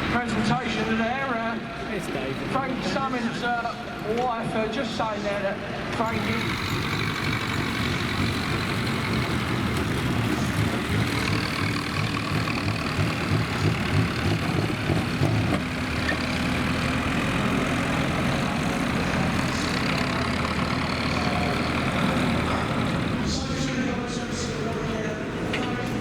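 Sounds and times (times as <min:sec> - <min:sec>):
car engines running rough: 0:05.6 - 0:26.0.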